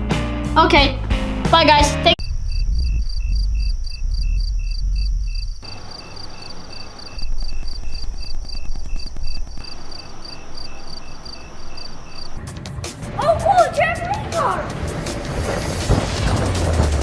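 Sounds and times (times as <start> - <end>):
low rumble: 2.2 - 9.7
crickets chirping: 2.2 - 12.4
faster cricket chirping: 2.2 - 12.4.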